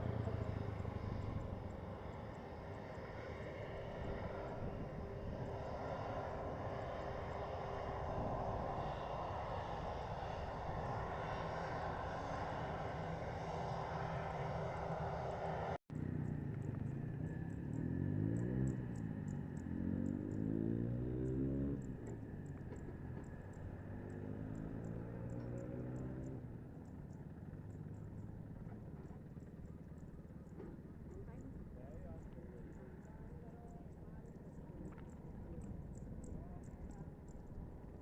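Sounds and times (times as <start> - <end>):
jet engine roaring: 0.0 - 15.8.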